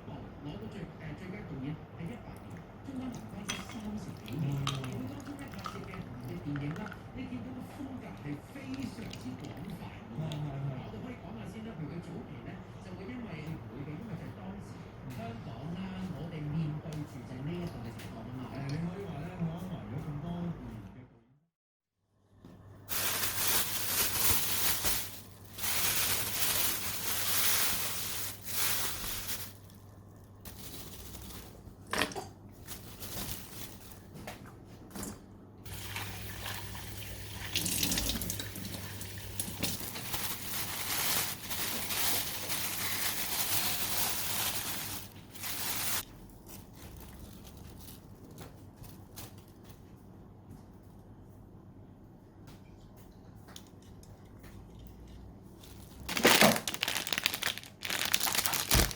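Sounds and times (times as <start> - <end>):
tap water splashing into sink: 37.3 - 38.8.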